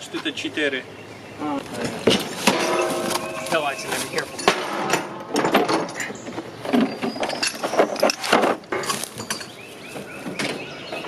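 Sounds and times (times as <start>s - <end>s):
metal parts clinking and rattling: 2.4s - 9.6s.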